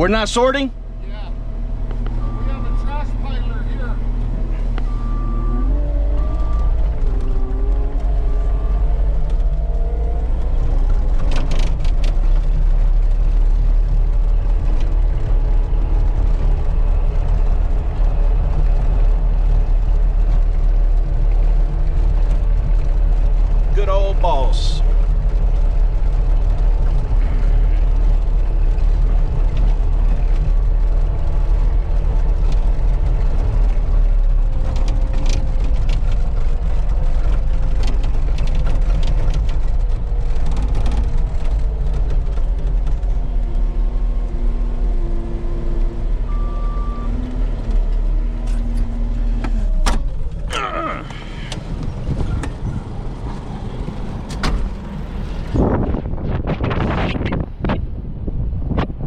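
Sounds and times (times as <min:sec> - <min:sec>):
vehicle engine rumbling: 0:00.0 - 0:59.0.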